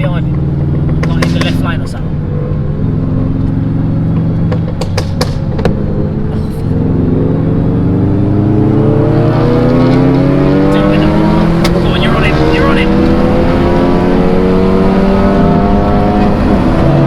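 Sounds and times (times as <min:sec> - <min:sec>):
sharp exhaust cracks: 0:00.0 - 0:06.8
car engine accelerating: 0:00.0 - 0:17.0.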